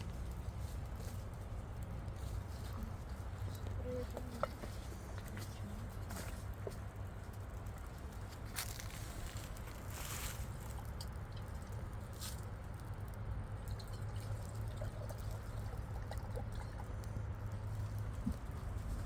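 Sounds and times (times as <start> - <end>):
water trickling and dripping: 5.2 - 19.0.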